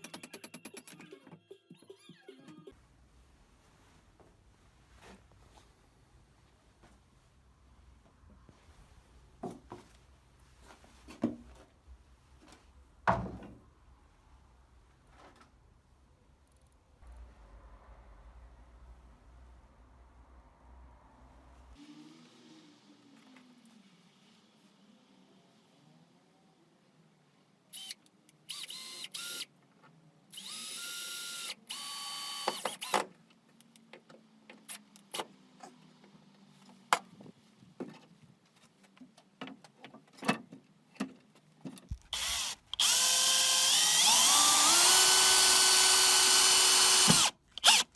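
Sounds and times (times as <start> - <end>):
power drill motor whine: 28.5 - 29.4, 30.4 - 32.9, 42.0 - 47.9.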